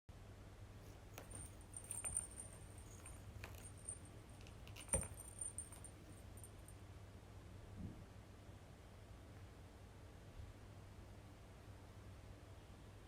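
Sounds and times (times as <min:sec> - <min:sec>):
high metallic jingle: 0:01.2 - 0:06.7.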